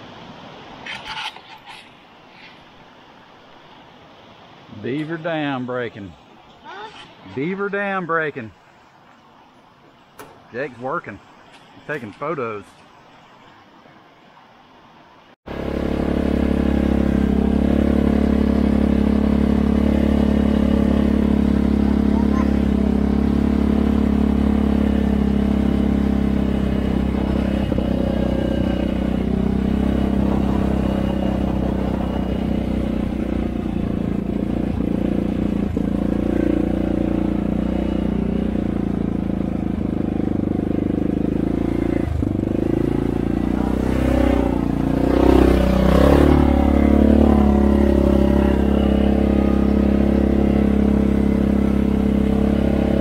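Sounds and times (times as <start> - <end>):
four-wheeler engine running: 15.5 - 53.0.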